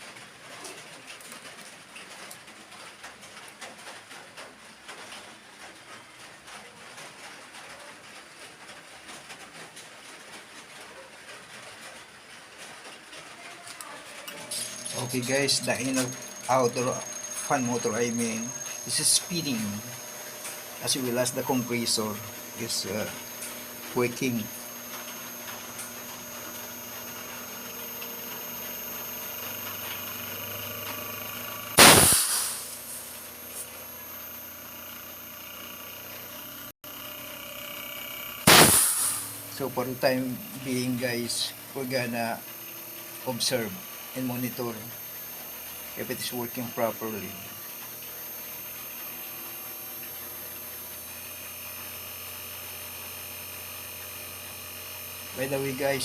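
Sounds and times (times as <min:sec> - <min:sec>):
air conditioner humming: 0:13.8 - 0:35.1
faint high whine: 0:13.8 - 0:56.0
loud sudden burst of noise: 0:31.7 - 0:33.1, 0:38.4 - 0:39.4.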